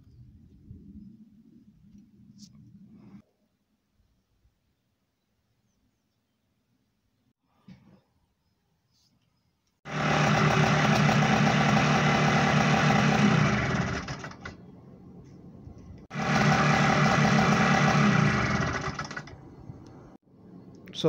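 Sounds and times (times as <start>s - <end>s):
motorcycle engine running: 9.9s - 14.5s, 16.1s - 19.3s.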